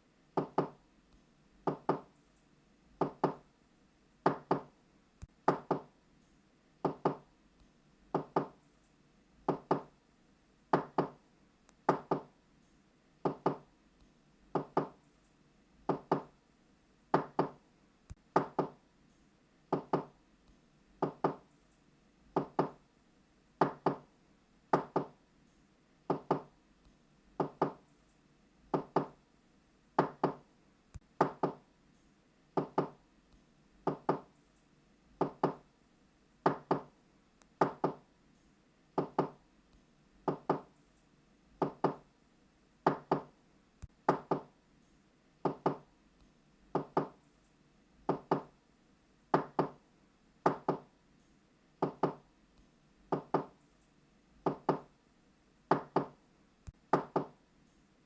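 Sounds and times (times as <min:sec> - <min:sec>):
knocking on a door: 0:00.4 - 0:00.8, 0:01.7 - 0:02.1, 0:03.0 - 0:03.4, 0:04.2 - 0:04.7, 0:05.5 - 0:05.9, 0:06.8 - 0:07.2, 0:08.1 - 0:08.6, 0:09.5 - 0:09.9, 0:10.7 - 0:11.2, 0:11.9 - 0:12.3, 0:13.2 - 0:13.6, 0:14.6 - 0:15.0, 0:15.9 - 0:16.3, 0:17.1 - 0:17.6, 0:18.4 - 0:18.8, 0:19.7 - 0:20.1, 0:21.0 - 0:21.4, 0:22.4 - 0:22.8, 0:23.6 - 0:24.0, 0:24.7 - 0:25.2, 0:26.1 - 0:26.5, 0:27.4 - 0:27.8, 0:28.7 - 0:29.2, 0:30.0 - 0:30.4, 0:31.2 - 0:31.6, 0:32.6 - 0:33.0, 0:33.9 - 0:34.3, 0:35.2 - 0:35.6, 0:36.4 - 0:36.9, 0:37.6 - 0:38.0, 0:39.0 - 0:39.4, 0:40.3 - 0:40.7, 0:41.6 - 0:42.0, 0:42.9 - 0:43.3, 0:44.1 - 0:44.5, 0:45.4 - 0:45.8, 0:46.8 - 0:47.2, 0:48.1 - 0:48.5, 0:49.3 - 0:49.8, 0:50.4 - 0:50.9, 0:51.8 - 0:52.2, 0:53.1 - 0:53.5, 0:54.4 - 0:54.9, 0:55.7 - 0:56.2, 0:56.9 - 0:57.4.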